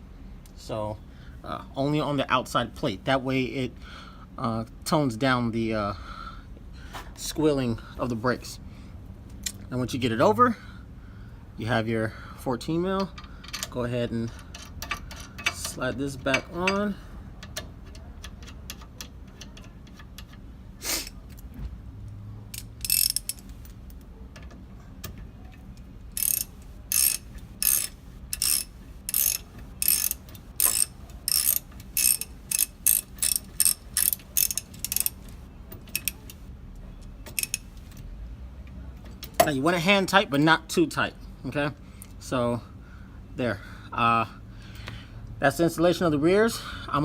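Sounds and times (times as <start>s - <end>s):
ratchet wrench clicking: 14.3s - 20.4s, 22.5s - 23.8s, 26.1s - 36.4s, 37.3s - 37.9s.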